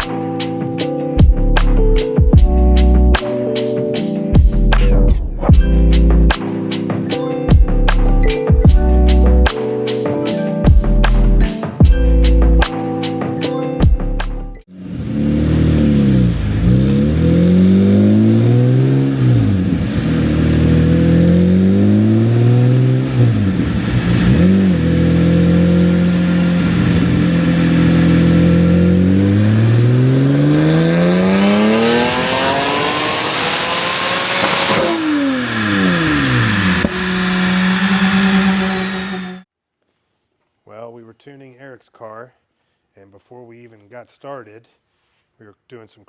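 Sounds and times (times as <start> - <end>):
car engine accelerating: 14.7 - 39.4.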